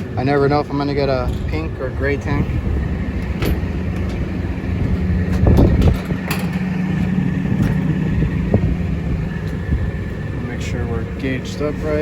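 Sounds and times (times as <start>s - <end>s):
air conditioning unit humming: 0.0s - 12.0s
equipment clicks and knocks: 3.2s - 4.3s, 5.3s - 8.0s.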